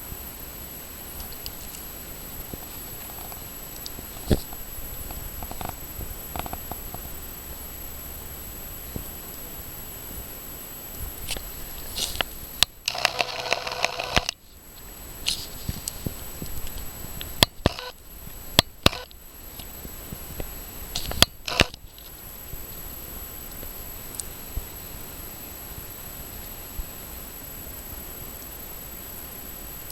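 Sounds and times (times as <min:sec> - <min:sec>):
sharp pops and snaps: 0:11.0 - 0:22.8.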